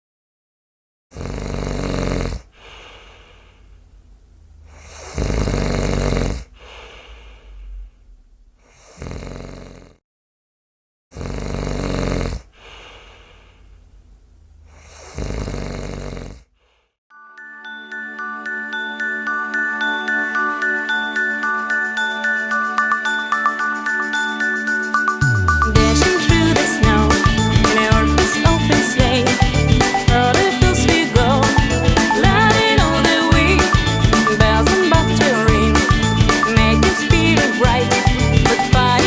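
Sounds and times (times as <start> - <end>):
person snoring loudly: 1.1 - 2.5, 4.7 - 7.8, 8.6 - 10.0, 11.1 - 13.1, 14.7 - 16.5, 25.6 - 39.0
tinkling bell tune: 17.1 - 39.0.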